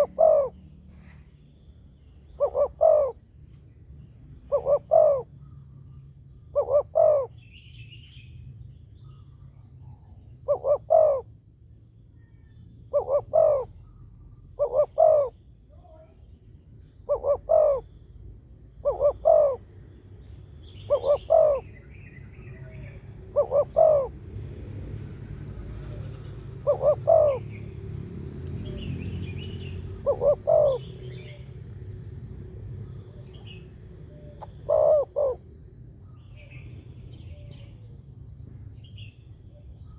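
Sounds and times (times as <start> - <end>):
dove cooing: 0.0 - 0.6, 2.3 - 3.2, 4.4 - 5.5, 6.5 - 7.4, 9.9 - 11.3, 12.9 - 15.4, 17.0 - 17.9, 18.8 - 19.7, 20.7 - 28.0, 28.6 - 37.8
small birds chirping: 0.0 - 39.9.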